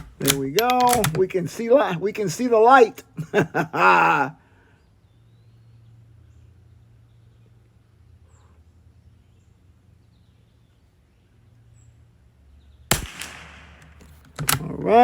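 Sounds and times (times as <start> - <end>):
faint bird chirps: 4.8 - 12.9
rifle shot: 12.9 - 14.2.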